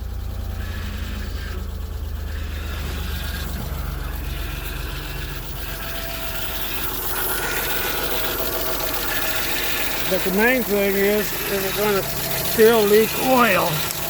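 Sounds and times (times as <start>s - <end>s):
car engine idling with clatter: 0.0s - 14.0s.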